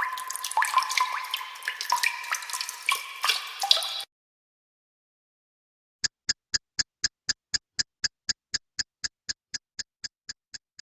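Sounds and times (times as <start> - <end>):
clock ticking: 6.0 - 10.9.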